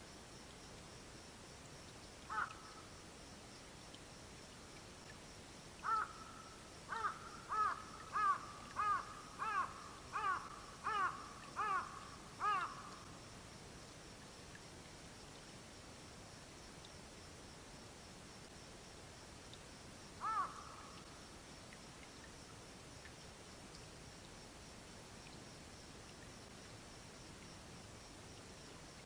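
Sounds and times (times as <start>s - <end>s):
owl calling: 6.9s - 13.0s, 20.2s - 20.7s.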